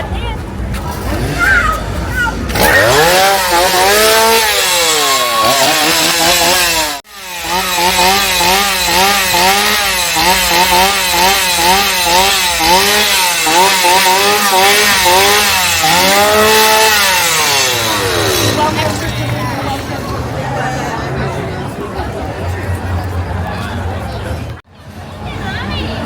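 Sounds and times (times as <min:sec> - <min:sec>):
chainsaw revving: 0:01.0 - 0:01.4, 0:02.4 - 0:20.8.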